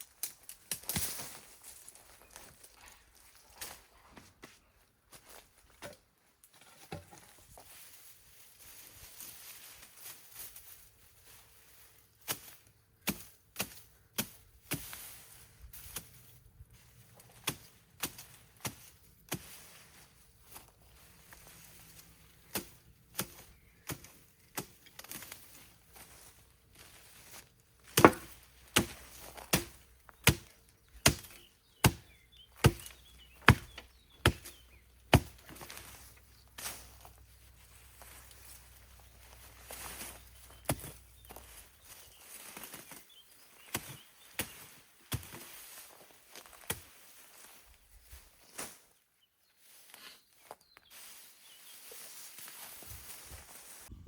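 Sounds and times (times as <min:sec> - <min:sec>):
blade chopping wood: 0:27.9 - 0:35.7.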